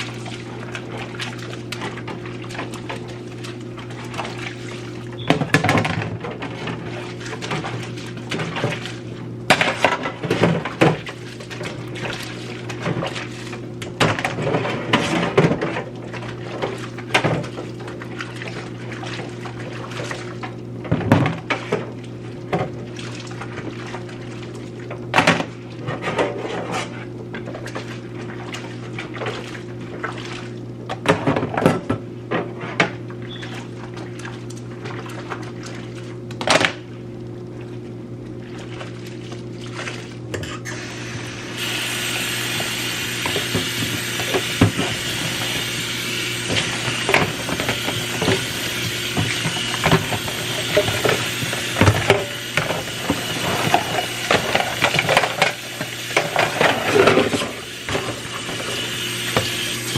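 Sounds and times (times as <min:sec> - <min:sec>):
tap water running: 0:00.0 - 0:21.2, 0:38.8 - 0:59.9.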